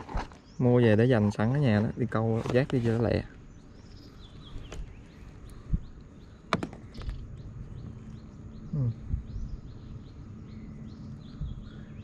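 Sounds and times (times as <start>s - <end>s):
bird chirping: 0.0s - 12.0s
knocks and taps of gear: 6.5s - 7.2s.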